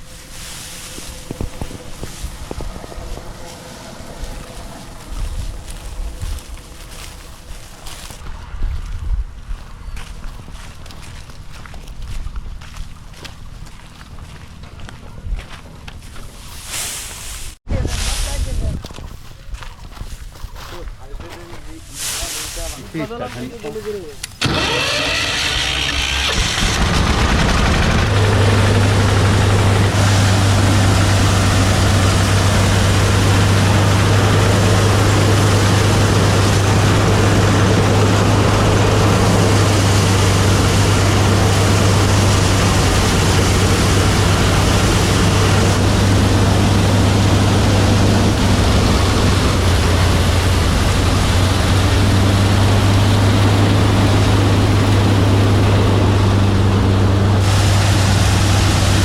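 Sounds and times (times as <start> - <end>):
dense rushing noise: 0.0 - 7.8, 24.5 - 59.0
engine humming: 0.0 - 16.4, 23.8 - 59.0.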